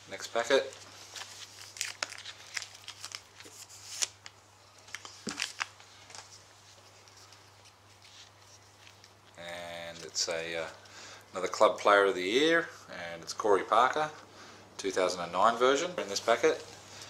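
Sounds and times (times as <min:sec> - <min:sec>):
foil pack tearing and crinkling: 0:01.1 - 0:04.2.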